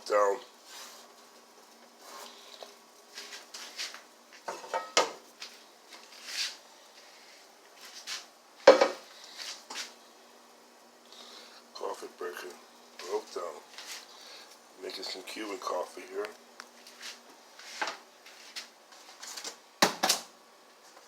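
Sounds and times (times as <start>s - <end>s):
pots and utensils clinking: 4.5s - 5.2s.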